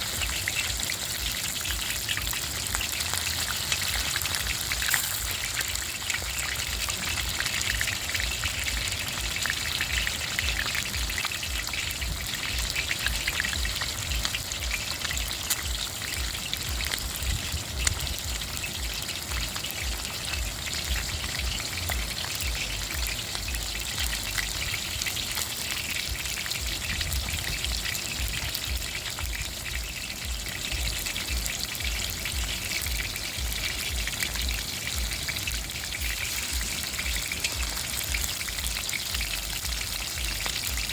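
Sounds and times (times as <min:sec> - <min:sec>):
fish frying in oil: 0:00.0 - 0:40.9.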